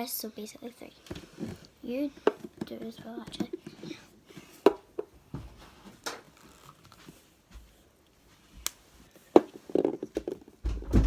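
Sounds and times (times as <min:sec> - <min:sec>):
objects clattering: 0:01.1 - 0:06.3, 0:09.3 - 0:11.0.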